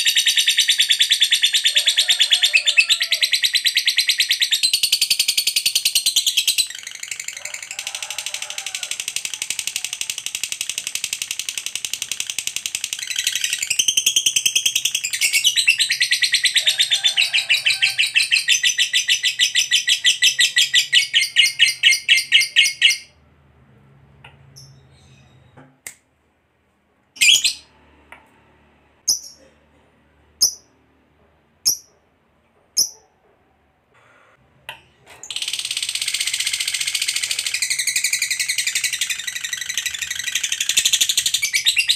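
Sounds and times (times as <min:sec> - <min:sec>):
bird chattering trill: 0:29.1 - 0:29.5.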